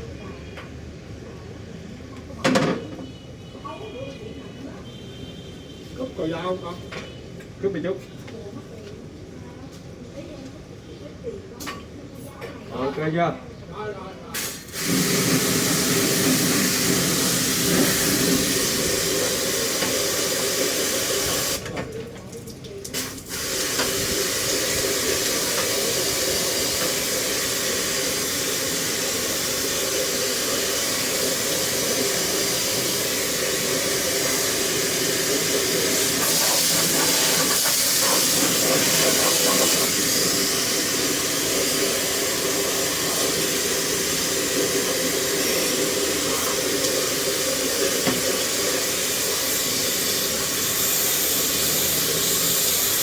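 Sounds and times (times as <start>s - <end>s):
pressure washer water jet hissing: 14.4s - 21.7s, 22.9s - 53.0s.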